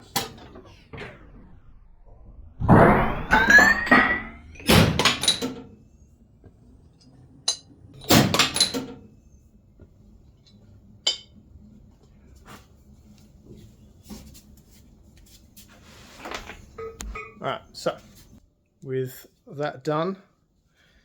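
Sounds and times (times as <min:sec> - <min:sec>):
short rising squeal: 0:00.5 - 0:05.4.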